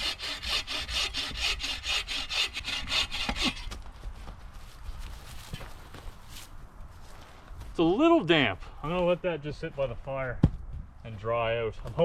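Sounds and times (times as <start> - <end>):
hand saw cutting wood: 0.0 - 3.8.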